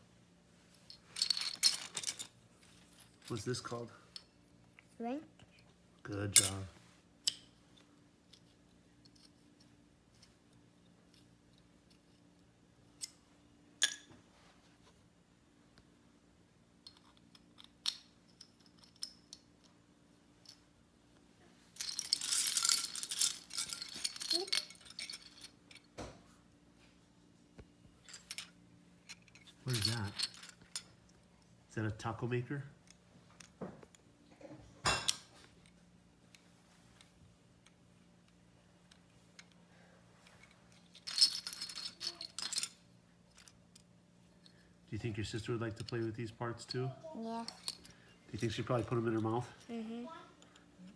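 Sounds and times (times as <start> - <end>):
small toy parts rattling: 0.7 - 4.3, 16.8 - 19.8, 21.7 - 25.9, 28.0 - 31.2, 40.2 - 44.6, 45.4 - 50.7
toy pieces clicking: 21.8 - 25.5, 41.0 - 42.7.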